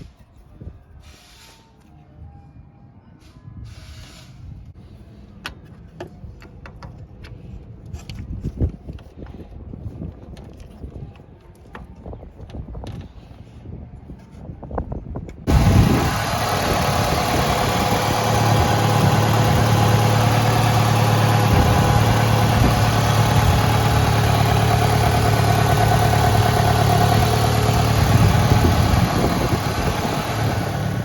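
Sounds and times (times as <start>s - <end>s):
car engine starting and running: 15.5s - 31.0s.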